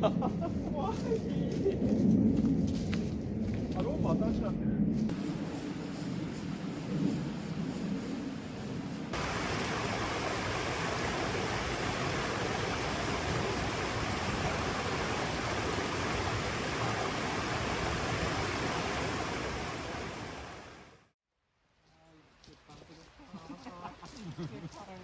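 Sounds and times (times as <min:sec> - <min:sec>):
rushing mountain stream: 0:09.1 - 0:21.0.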